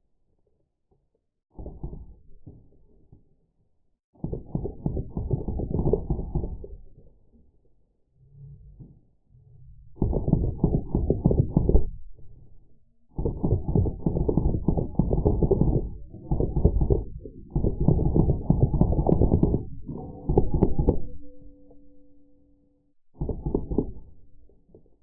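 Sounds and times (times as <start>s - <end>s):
slowed machine gun bursts: 10.0s - 12.0s, 13.1s - 20.9s.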